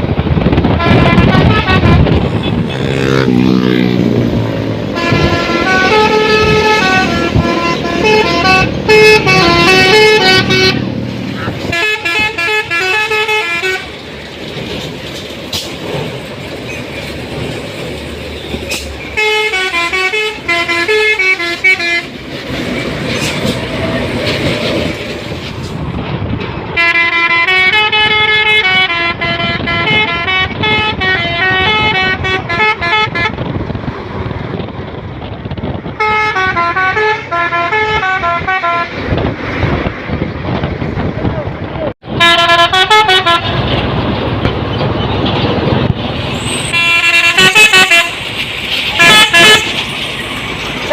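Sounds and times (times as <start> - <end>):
vehicle noise: 0.0 - 50.9
multi-tone air horn melody: 0.8 - 3.4, 4.9 - 10.9, 11.6 - 13.9, 19.2 - 22.2, 26.8 - 33.5, 36.0 - 39.0, 42.1 - 43.6, 46.7 - 48.2, 49.0 - 49.8.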